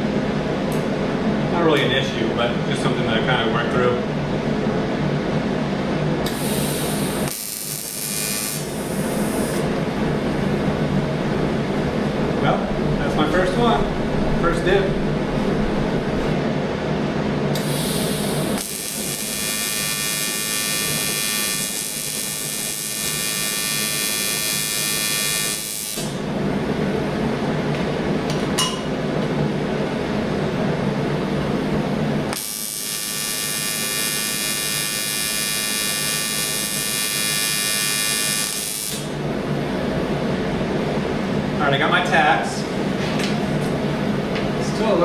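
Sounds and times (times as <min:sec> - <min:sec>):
low steady hum: 0:00.0 - 0:22.7
welding arc buzzing and sizzling: 0:06.2 - 0:10.6, 0:17.5 - 0:26.4, 0:32.3 - 0:39.2.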